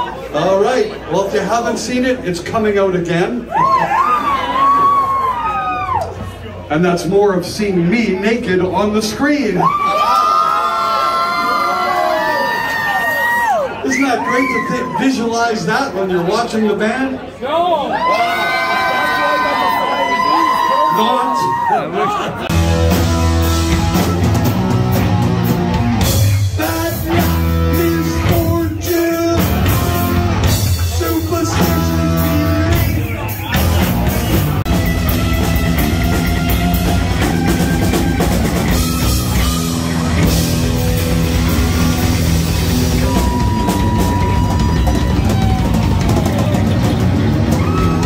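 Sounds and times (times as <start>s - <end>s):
heavy metal band playing: 22.5s - 48.0s.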